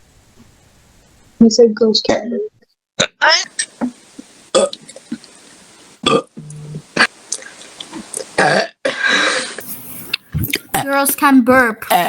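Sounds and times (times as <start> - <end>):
person burping: 4.5 - 5.0, 6.0 - 7.2, 8.2 - 9.3.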